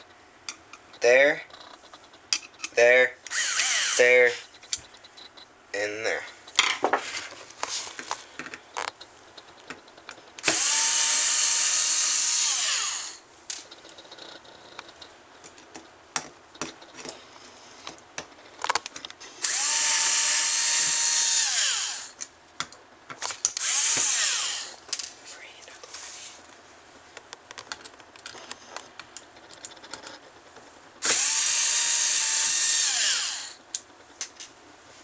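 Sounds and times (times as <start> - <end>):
power drill whining: 3.3 - 4.2, 10.4 - 13.2, 19.4 - 22.2, 23.6 - 24.8, 31.0 - 33.6.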